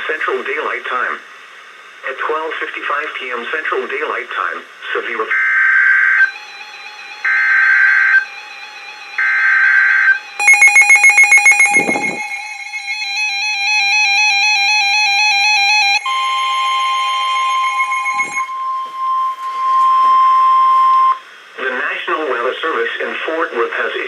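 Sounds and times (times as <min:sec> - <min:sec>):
steady warning alarm tone: 0:05.4 - 0:21.2
fast beeps: 0:10.4 - 0:13.7, 0:15.9 - 0:18.6
high-pitched data squawks: 0:10.4 - 0:14.2, 0:15.8 - 0:20.4
electronic tones stepping in pitch: 0:10.4 - 0:21.2.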